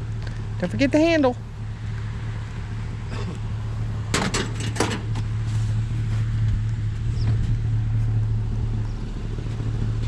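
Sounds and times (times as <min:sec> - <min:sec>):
truck engine and road drone: 0:00.0 - 0:10.0
sharp knocks or rattles: 0:04.1 - 0:05.2.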